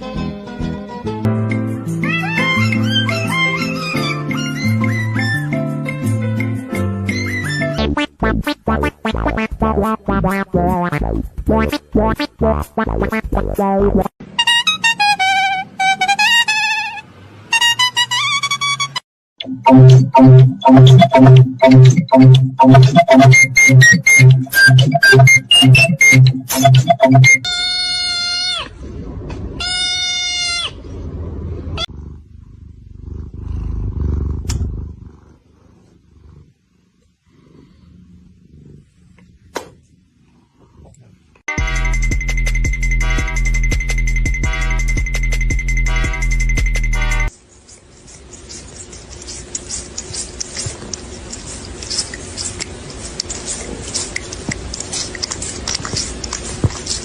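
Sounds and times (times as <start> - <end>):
cat chewing crunchy food: 47.6 - 57.0.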